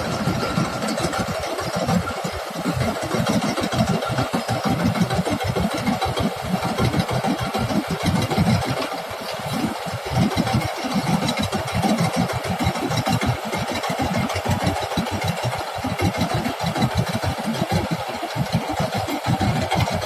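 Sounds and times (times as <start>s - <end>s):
combine harvester running: 0.0s - 20.0s.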